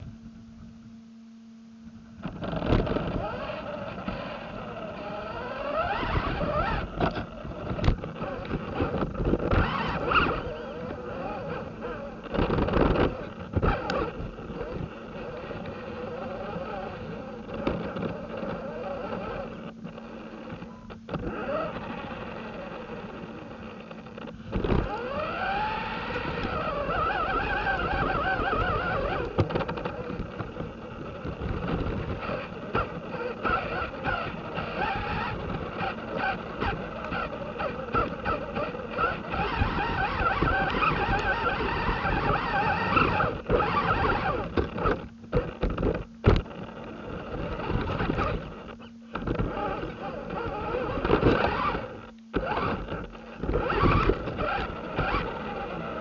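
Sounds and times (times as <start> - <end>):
tyre and ground noise: 2.0 - 56.0
toy car electric motor whining: 2.2 - 56.0.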